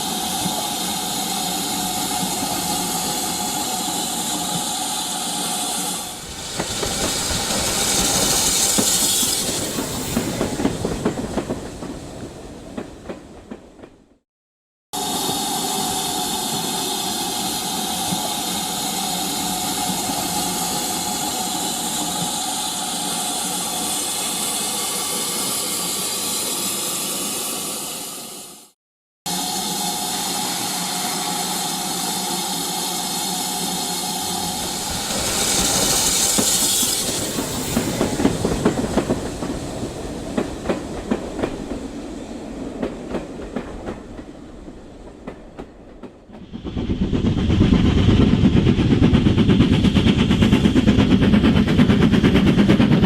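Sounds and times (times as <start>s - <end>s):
model train running on track: 0.0s - 12.0s, 15.0s - 28.7s, 29.3s - 53.0s.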